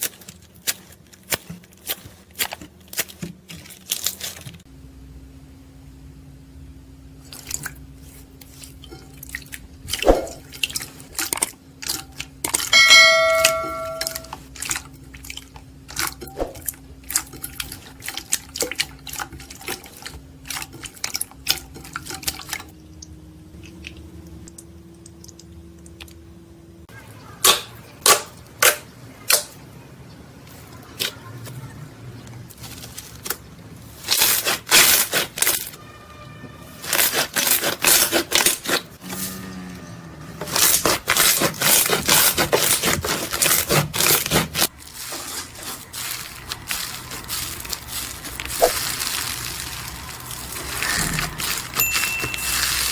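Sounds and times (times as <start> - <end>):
short pitched tone: 12.8 - 14.3.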